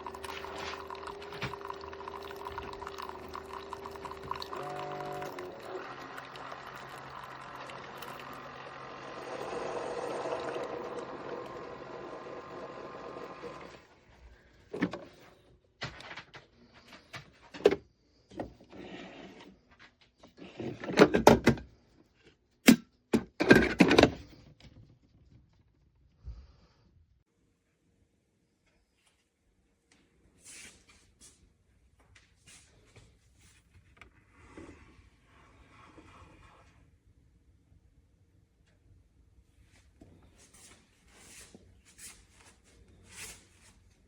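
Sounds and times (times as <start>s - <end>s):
coffee maker brew stream: 0.0s - 14.1s, 14.7s - 15.1s, 23.2s - 24.2s.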